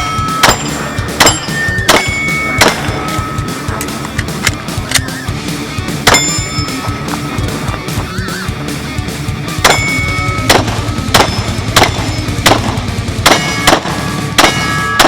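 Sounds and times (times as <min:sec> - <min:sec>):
steel targets clanging: 0:00.0 - 0:04.5, 0:06.0 - 0:07.4, 0:09.6 - 0:15.0
pistol shots: 0:00.4 - 0:03.2, 0:06.0 - 0:06.4, 0:09.6 - 0:15.0.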